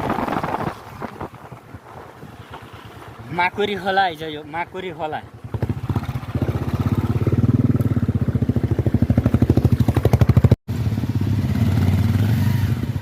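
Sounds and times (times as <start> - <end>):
motorcycle engine at low revs: 5.2 - 13.0.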